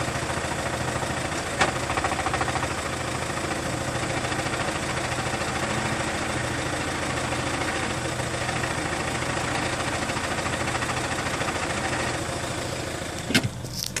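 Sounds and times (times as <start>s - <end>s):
diesel engine idling: 0.0s - 14.0s.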